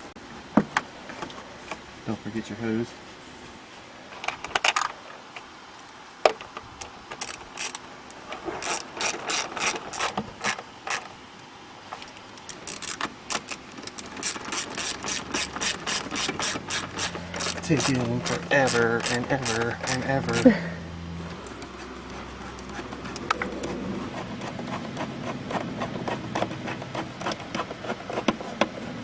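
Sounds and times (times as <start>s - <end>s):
hand ratchet clicking: 7.1s - 7.8s, 8.6s - 11.1s, 12.4s - 20.5s.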